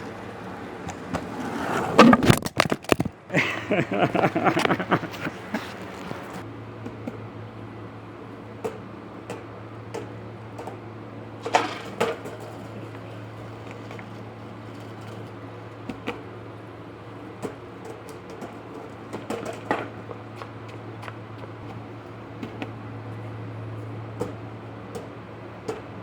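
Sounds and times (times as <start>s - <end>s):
skateboard knocks and clacks: 0.0s - 3.2s, 8.6s - 16.4s, 17.1s - 22.8s, 24.2s - 26.0s.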